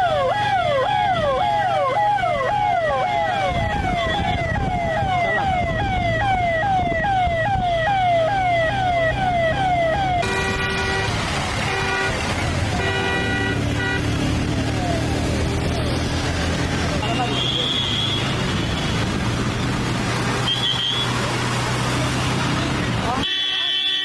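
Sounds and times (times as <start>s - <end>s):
siren yelping: 0.0s - 15.9s
low traffic noise: 0.0s - 23.2s
horn blasts: 10.2s - 14.7s, 23.2s - 24.0s.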